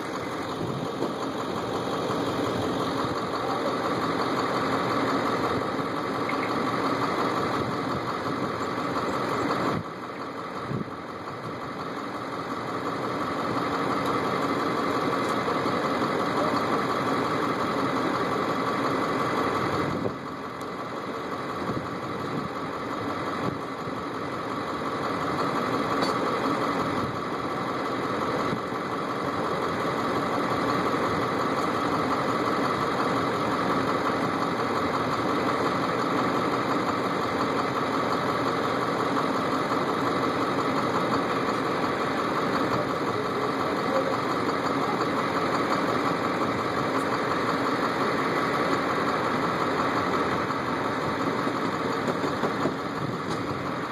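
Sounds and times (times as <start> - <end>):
diesel engine running: 0.0 - 53.9
machinery whine: 0.0 - 53.9.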